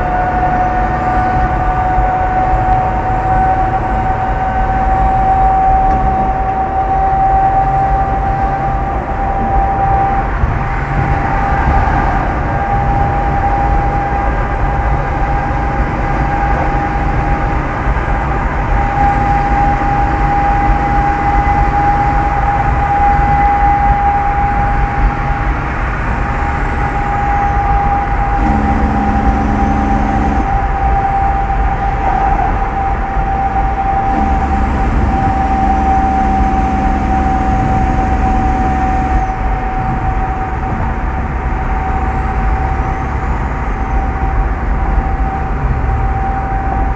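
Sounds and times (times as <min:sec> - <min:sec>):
deep engine note: 0:00.0 - 0:46.9
heavy trucks on highway: 0:00.0 - 0:46.9
high whistle: 0:02.2 - 0:14.6, 0:26.2 - 0:40.5.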